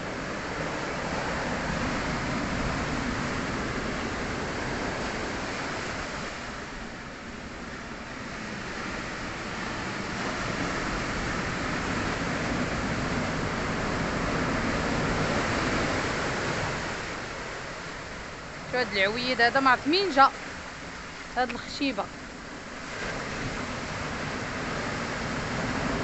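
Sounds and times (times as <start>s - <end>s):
sea waves washing onto shore: 0.0s - 26.0s.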